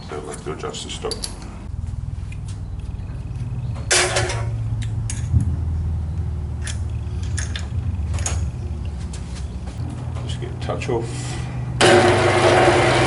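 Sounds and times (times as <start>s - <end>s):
clattering rattle: 3.7s - 5.4s, 6.6s - 8.6s
sharp metallic clicks: 6.2s - 9.0s
lathe humming: 11.8s - 13.0s.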